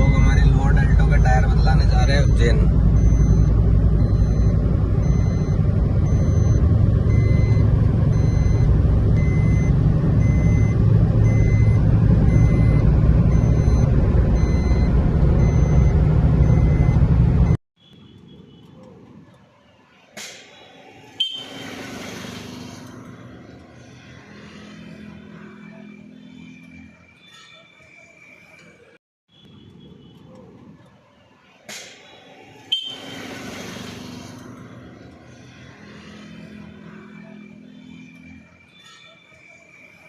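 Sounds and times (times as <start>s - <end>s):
car road and wind rumble: 0.0s - 17.6s.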